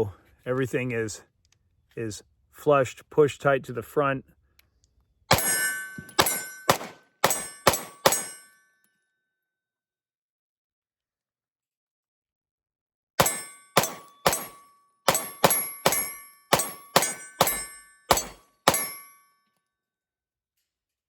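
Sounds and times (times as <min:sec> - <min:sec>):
pistol shots: 0:05.3 - 0:08.4, 0:13.2 - 0:19.0
steel target ringing: 0:05.3 - 0:08.7, 0:13.2 - 0:19.3.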